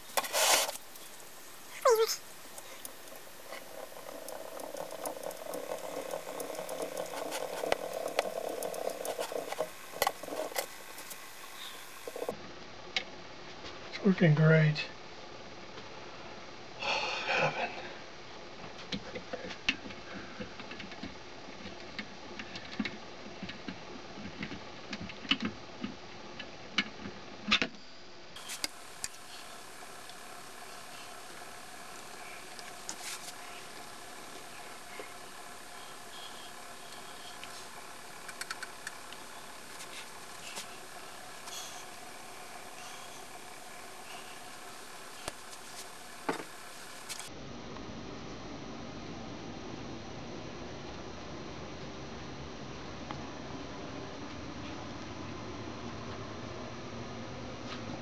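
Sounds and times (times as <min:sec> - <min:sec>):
spring motor humming: 0:00.0 - 0:12.4, 0:28.4 - 0:47.3
light irregular clicking: 0:02.2 - 0:12.3, 0:28.5 - 0:47.3.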